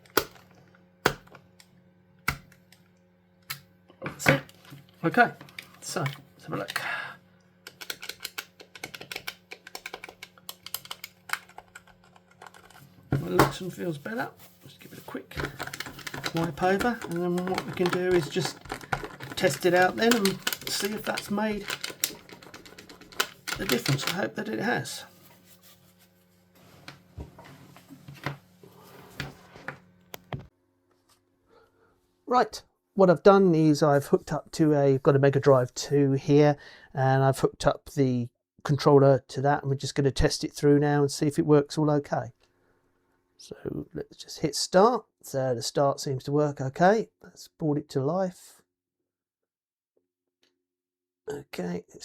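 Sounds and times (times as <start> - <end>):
steady low hum: 0.0 - 30.5
game controller buttons clicking: 7.7 - 12.8, 15.4 - 24.3.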